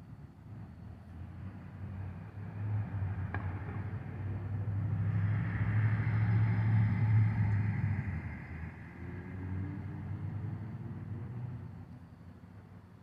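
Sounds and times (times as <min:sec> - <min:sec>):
car driving past: 0:04.8 - 0:11.7.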